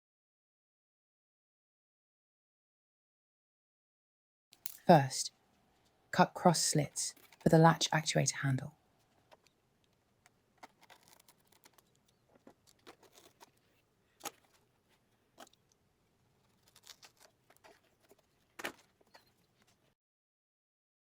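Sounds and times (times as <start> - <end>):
blade cutting leather: 10.6 - 15.6.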